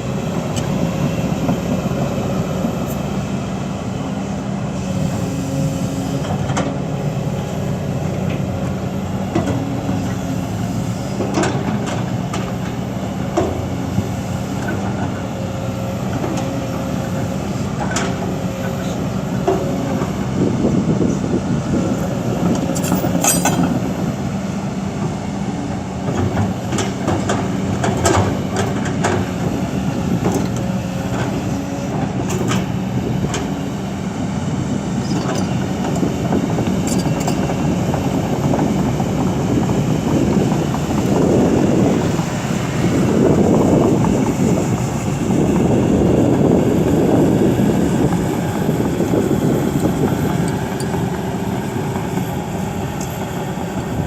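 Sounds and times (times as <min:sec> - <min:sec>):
excavator diesel engine running: 0:00.0 - 0:54.0
sharp metal clanks and knocks: 0:22.8 - 0:23.8.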